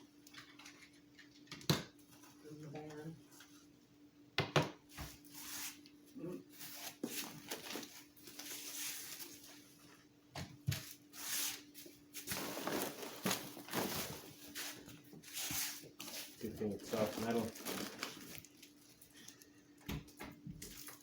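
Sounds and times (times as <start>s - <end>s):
faint steady hum: 0.0s - 21.0s
packaging rustling and crinkling: 6.5s - 9.9s, 10.7s - 19.5s, 20.6s - 21.0s.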